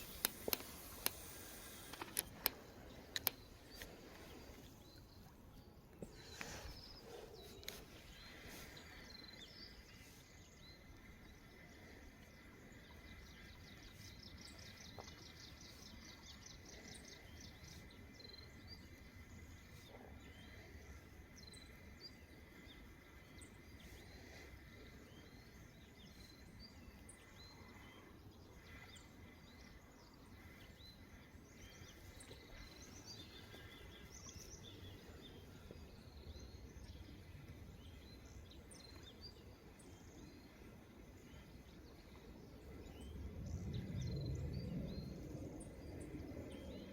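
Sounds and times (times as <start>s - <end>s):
sharp clicks: 0.0s - 3.9s
birds chirping and trilling: 0.0s - 46.9s.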